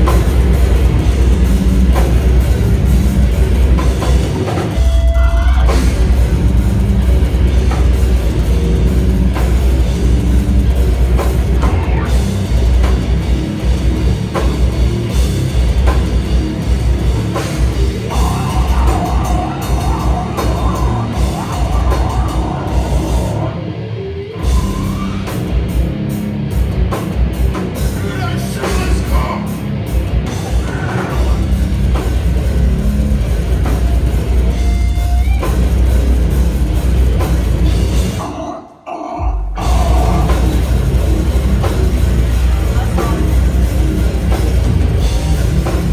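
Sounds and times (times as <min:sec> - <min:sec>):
live death metal band: 0:00.0 - 0:45.9.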